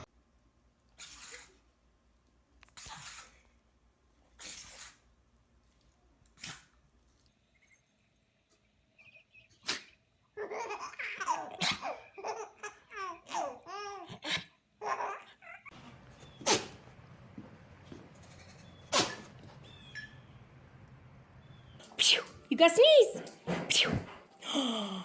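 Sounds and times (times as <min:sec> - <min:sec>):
animal sneezes: 0:01.0 - 0:01.6, 0:02.7 - 0:03.5, 0:04.4 - 0:05.0, 0:06.4 - 0:06.8, 0:09.6 - 0:10.0, 0:16.4 - 0:16.8, 0:18.9 - 0:19.3, 0:21.8 - 0:22.4, 0:23.6 - 0:24.2.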